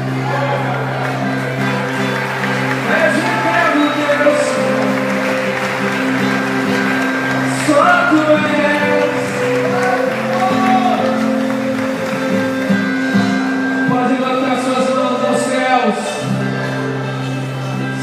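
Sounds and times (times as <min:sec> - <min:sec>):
band holding sustained chords: 0:00.0 - 0:18.0
person singing: 0:07.4 - 0:11.2.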